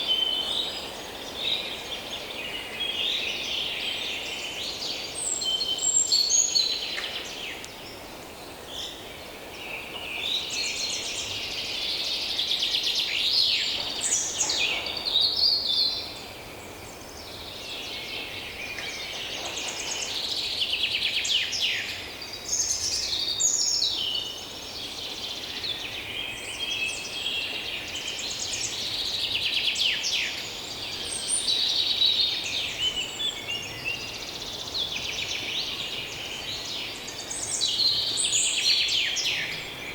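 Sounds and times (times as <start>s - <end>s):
faint background hiss: 0.0s - 39.9s
songbirds singing and calling: 0.0s - 39.9s.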